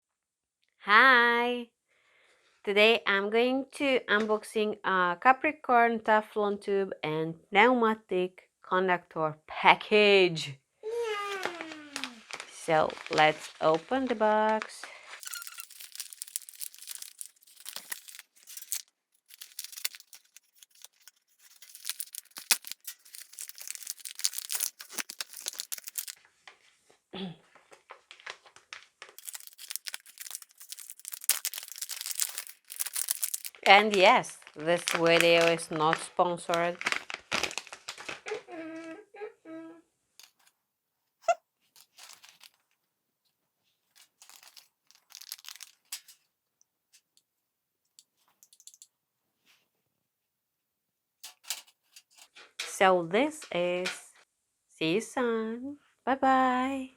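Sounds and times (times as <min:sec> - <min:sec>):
packaging crinkling and tearing: 0:11.2 - 0:26.2, 0:27.7 - 0:38.4, 0:41.8 - 0:42.6, 0:44.0 - 0:46.1.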